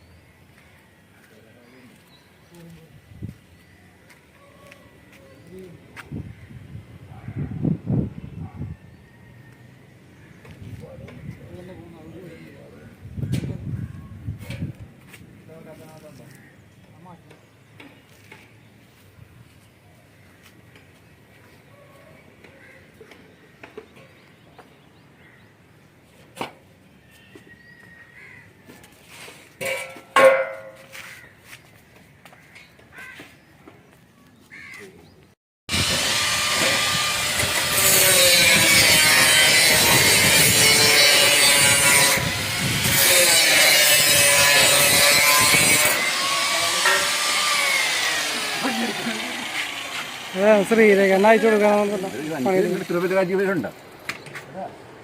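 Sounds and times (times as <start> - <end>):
power tool hissing on metal: 35.7 - 53.0.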